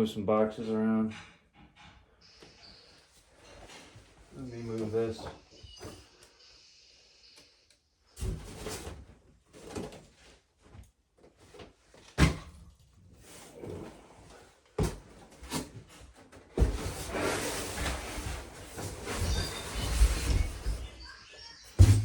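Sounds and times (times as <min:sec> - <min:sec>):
cardboard boxes scraping and rustling: 0:13.2 - 0:20.9
boxes thudding down: 0:21.7 - 0:22.0.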